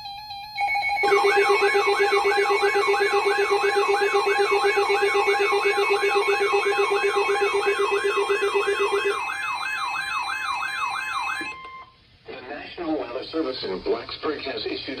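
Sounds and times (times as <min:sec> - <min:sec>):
warbling siren-like alarm: 0:00.0 - 0:11.9
steady warning alarm tone: 0:00.1 - 0:11.9.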